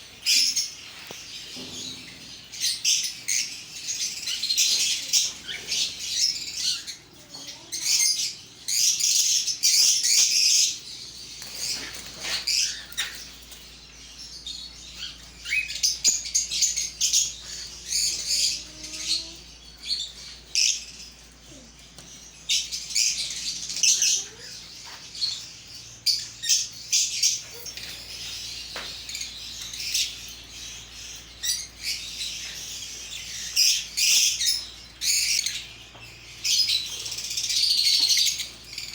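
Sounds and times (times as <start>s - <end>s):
parrots chirping: 14.4s - 21.3s, 22.5s - 38.9s.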